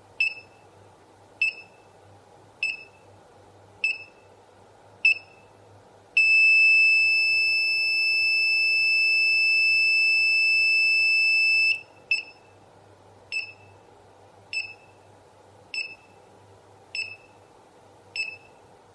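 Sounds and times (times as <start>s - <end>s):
buzzer high-pitched tone: 6.2s - 12.4s.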